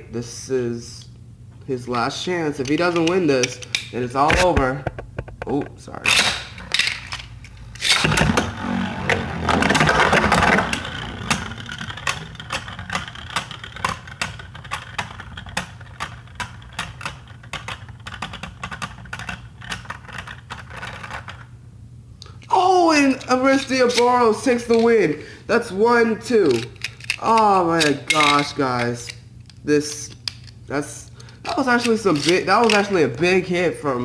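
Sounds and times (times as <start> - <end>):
steady spinning hum: 0.0 - 29.7
spinning tops clashing plastic clicks: 9.9 - 21.5, 26.4 - 29.2, 31.2 - 33.0.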